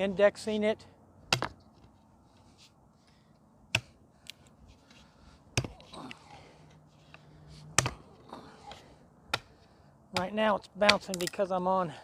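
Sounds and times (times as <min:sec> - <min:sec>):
knife chopping into wood: 0:01.3 - 0:01.6, 0:03.7 - 0:04.0, 0:05.5 - 0:06.2, 0:07.7 - 0:08.1, 0:08.7 - 0:11.3.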